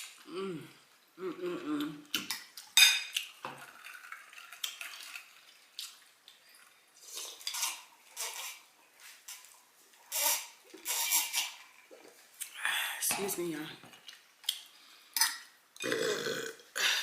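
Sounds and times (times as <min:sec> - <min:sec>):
cutlery scraping a plate: 0:07.2 - 0:08.7, 0:10.1 - 0:11.7.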